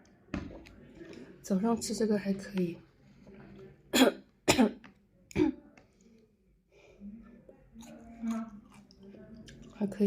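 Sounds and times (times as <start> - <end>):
woman coughing: 3.9 - 4.8.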